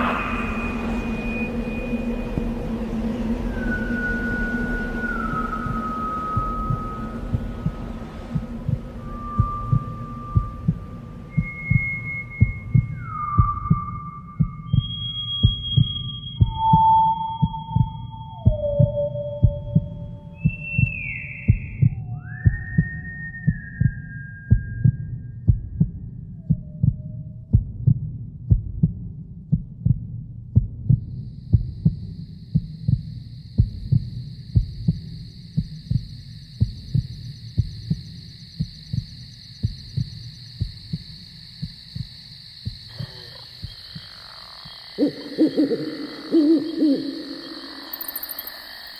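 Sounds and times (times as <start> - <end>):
thin high whine: 0.0 - 15.1
high wavering tone: 0.0 - 21.5, 45.0 - 48.9
low rumble: 0.0 - 48.7
heartbeat thumps: 5.3 - 48.4.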